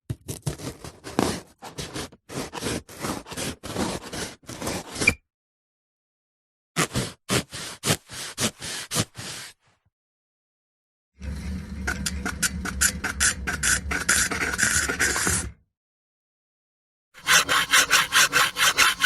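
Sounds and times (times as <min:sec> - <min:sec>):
hand saw sawing: 0:00.6 - 0:04.8, 0:06.8 - 0:09.5, 0:11.2 - 0:15.5, 0:17.2 - 0:19.0.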